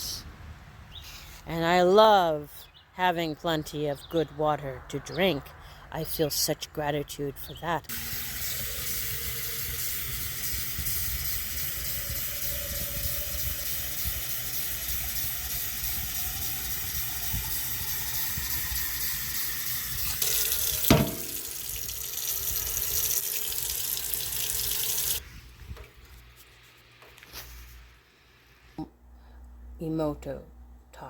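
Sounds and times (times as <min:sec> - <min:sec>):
flowing water rushing: 0:20.2 - 0:25.2
sharp bump: 0:20.8 - 0:21.6.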